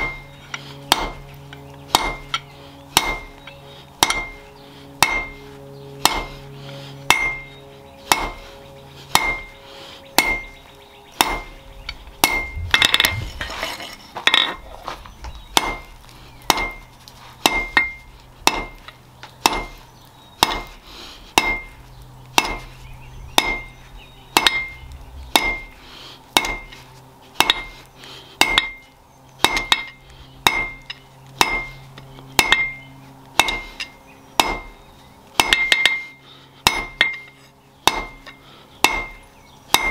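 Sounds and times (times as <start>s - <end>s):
hammer striking steel on anvil: 0.0s - 1.3s, 1.9s - 3.4s, 4.0s - 4.4s, 5.0s - 5.4s, 6.0s - 6.3s, 7.1s - 8.4s, 9.1s - 9.6s, 10.2s - 10.6s, 11.2s - 11.6s, 12.2s - 14.7s, 15.5s - 19.7s, 20.4s - 20.7s, 21.4s - 21.8s, 22.4s - 22.7s, 23.4s - 26.8s, 27.4s - 27.7s, 28.4s - 31.8s, 32.4s - 34.7s, 35.4s - 39.9s.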